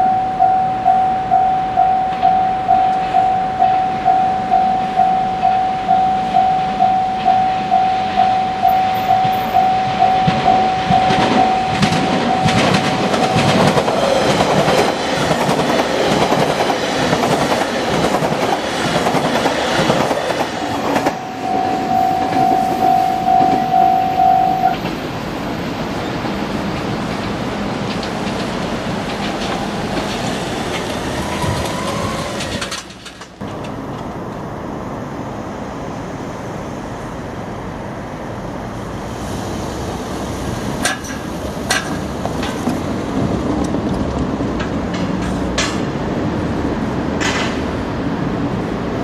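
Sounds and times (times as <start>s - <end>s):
level crossing alarm ringing: 0.0s - 14.8s, 20.7s - 24.8s
train wheels clattering: 9.1s - 21.2s, 26.1s - 33.8s, 40.8s - 46.0s.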